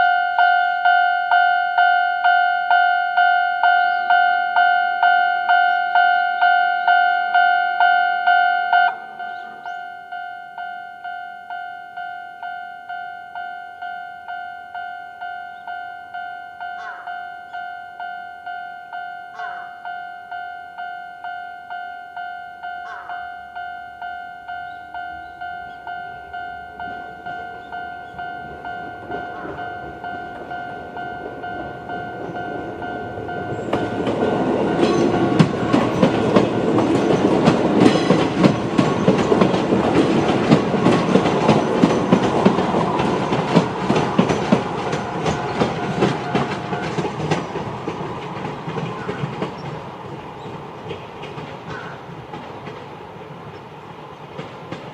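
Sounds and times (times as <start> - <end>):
level crossing warning bell: 0.0 - 52.8
train wheels clattering: 25.0 - 54.9.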